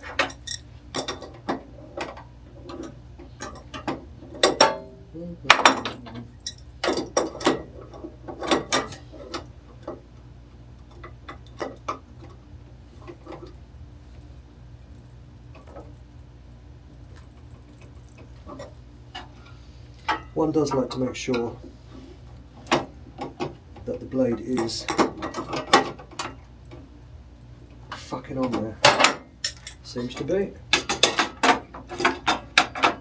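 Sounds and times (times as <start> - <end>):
metallic clicks and knocks: 0.0 - 4.9, 27.9 - 33.0
steady low hum: 0.0 - 33.0.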